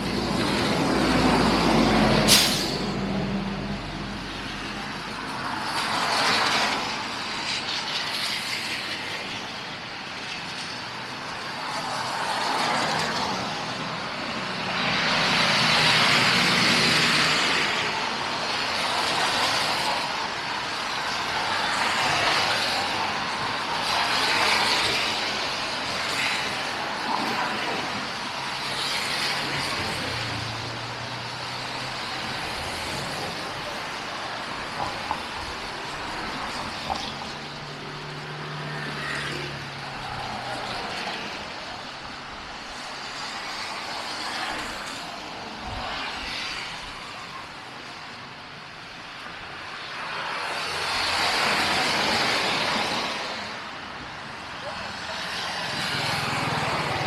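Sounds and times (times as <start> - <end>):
passing vehicle engine hum: 0.0 - 6.7
tyres hissing on snowy road: 0.0 - 57.0.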